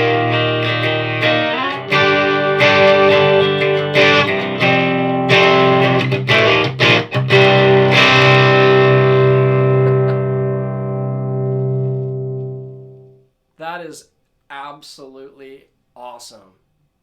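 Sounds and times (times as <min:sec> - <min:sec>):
muted guitar strokes: 0:00.0 - 0:13.2
overdriven electric guitar chords: 0:00.0 - 0:13.3.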